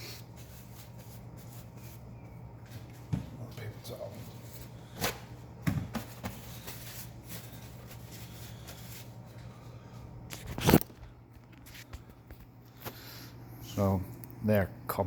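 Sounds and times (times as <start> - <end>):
paper towel rustling: 0.0 - 10.8
steady low hum: 0.0 - 15.0.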